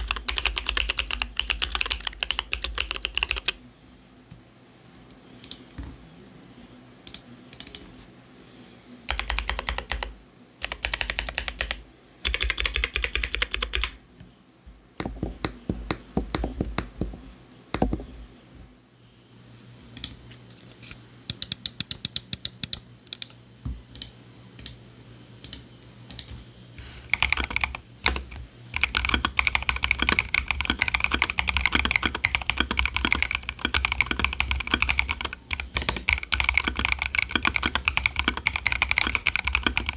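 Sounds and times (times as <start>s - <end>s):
mechanical keyboard typing: 0.0s - 3.6s, 9.1s - 14.0s, 27.1s - 39.9s.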